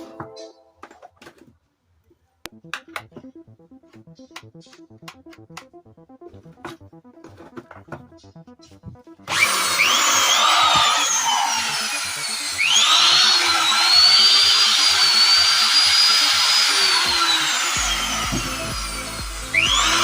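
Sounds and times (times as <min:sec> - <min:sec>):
background music: 0:00.0 - 0:00.9, 0:02.5 - 0:20.0
tile cutter motor whining: 0:09.2 - 0:20.0.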